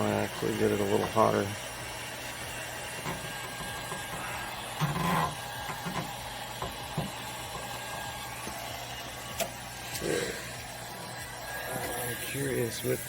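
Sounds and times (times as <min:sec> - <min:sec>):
heat gun fan hum: 0:00.0 - 0:13.0.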